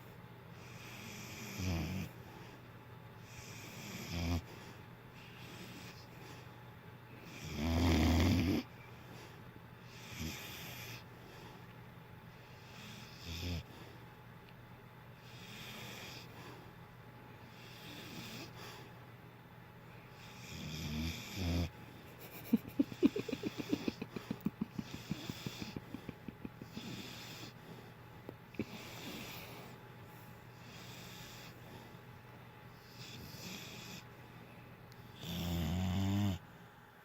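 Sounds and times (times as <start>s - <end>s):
dog snoring: 0.6s - 2.2s, 3.2s - 6.4s, 7.2s - 8.7s, 9.8s - 11.4s, 12.6s - 13.8s, 15.2s - 16.6s, 17.4s - 18.9s, 20.1s - 21.7s, 22.3s - 27.8s, 28.5s - 29.8s, 30.5s - 31.6s, 32.7s - 34.1s, 35.2s - 36.4s.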